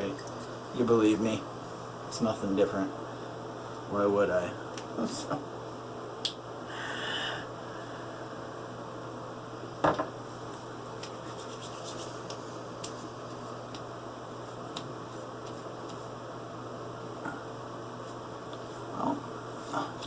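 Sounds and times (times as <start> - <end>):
hands rubbing skin: 10.8 - 16.2, 18.0 - 20.0.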